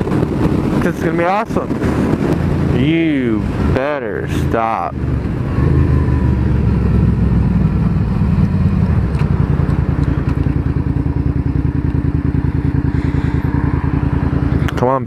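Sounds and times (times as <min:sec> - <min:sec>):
motorcycle engine idling: 0:06.3 - 0:15.0.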